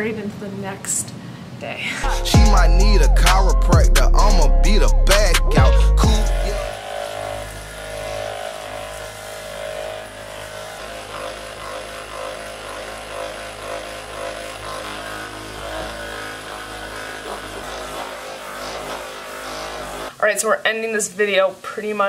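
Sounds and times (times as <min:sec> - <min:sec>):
small motor humming: 0:04.2 - 0:20.2.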